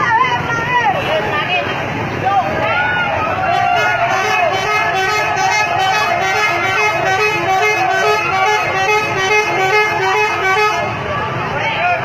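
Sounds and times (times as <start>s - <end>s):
musical bus horn tune: 3.5s - 11.0s.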